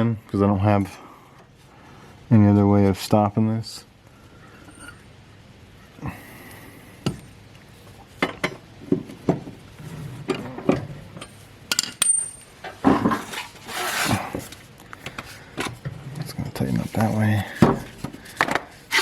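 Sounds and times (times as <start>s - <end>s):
metal clinks and knocks: 11.1s - 12.8s.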